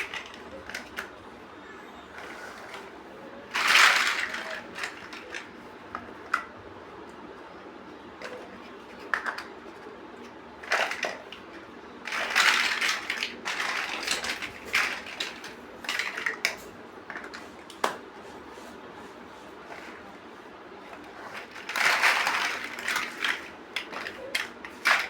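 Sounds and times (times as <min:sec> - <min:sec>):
plastic bricks clicking together: 0:00.0 - 0:01.2, 0:03.5 - 0:06.5, 0:08.2 - 0:18.0, 0:21.1 - 0:25.0.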